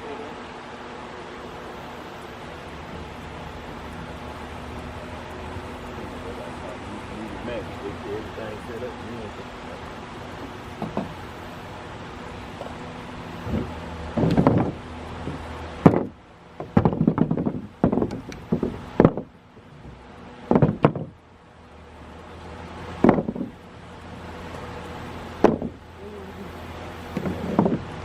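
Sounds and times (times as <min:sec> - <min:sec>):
low steady hum: 0:00.0 - 0:28.0
wooden knocks and bangs: 0:09.7 - 0:11.5, 0:12.4 - 0:21.2, 0:22.9 - 0:23.6, 0:25.3 - 0:25.8, 0:27.0 - 0:28.0.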